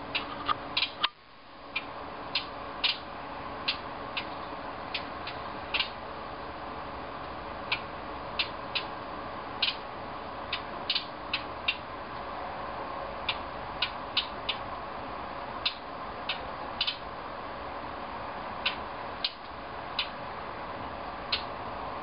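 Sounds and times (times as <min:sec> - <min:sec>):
steady background hum: 0:00.0 - 0:22.0
songbird clicking calls: 0:00.1 - 0:01.1, 0:01.7 - 0:06.0, 0:07.7 - 0:08.9, 0:09.6 - 0:09.8, 0:10.5 - 0:11.9, 0:13.2 - 0:14.6, 0:15.6 - 0:17.0, 0:18.6 - 0:20.2, 0:21.3 - 0:21.5.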